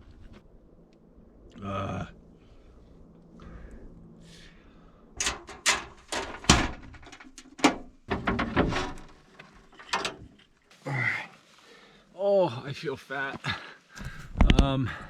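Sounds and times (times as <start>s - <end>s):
sharp knocks and clunks: 5.2s - 9.2s.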